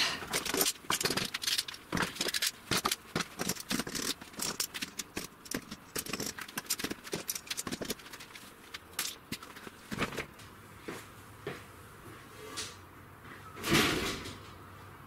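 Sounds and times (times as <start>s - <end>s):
small metal parts clattering: 0.2s - 10.2s.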